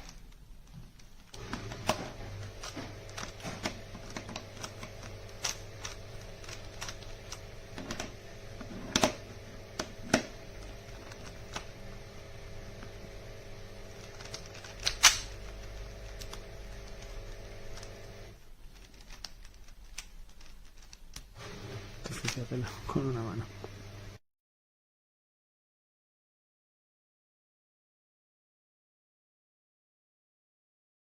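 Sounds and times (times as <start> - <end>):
speed cube plastic clicks: 0.0 - 7.5, 14.0 - 17.9, 18.7 - 21.4
steady low hum: 1.0 - 18.6.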